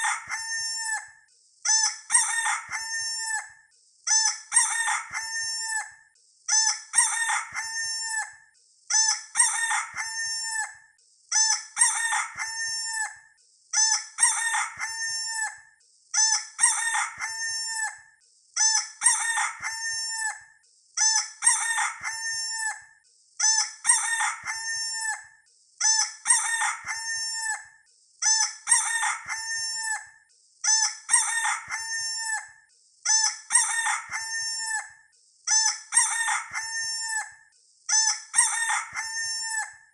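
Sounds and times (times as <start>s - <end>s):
rooster crowing: 0.0s - 1.1s, 2.2s - 3.5s, 4.6s - 5.9s, 7.0s - 8.3s, 9.4s - 10.7s, 11.8s - 13.2s, 14.2s - 15.6s, 16.6s - 18.0s, 19.0s - 20.5s, 21.4s - 22.8s, 23.9s - 25.3s, 26.3s - 27.7s, 28.7s - 30.1s, 31.1s - 32.4s, 33.5s - 34.9s, 36.0s - 37.3s, 38.4s - 39.8s.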